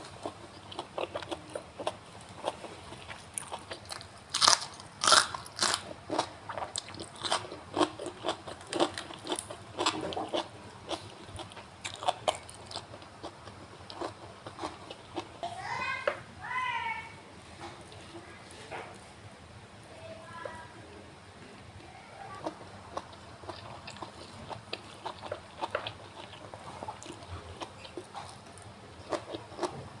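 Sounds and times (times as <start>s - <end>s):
bean pods crunched and chewed: 0.2s - 15.3s.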